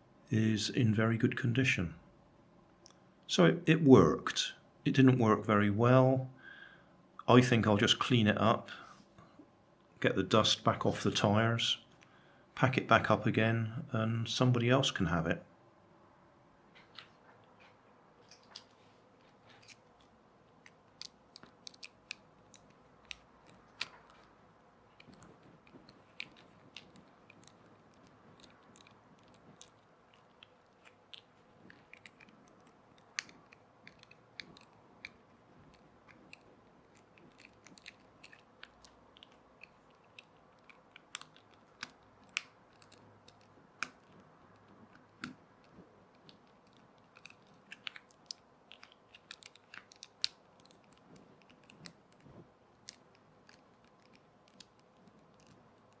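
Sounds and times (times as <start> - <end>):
clicks of hands handling plastic toy: 16.8 - 56.0.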